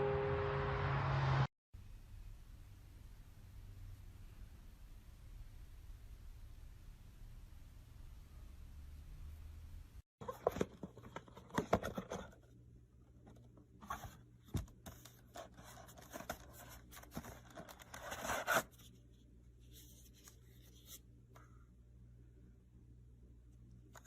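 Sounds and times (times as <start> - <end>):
scraping and rustling handling noise: 10.2 - 12.5, 13.1 - 21.1.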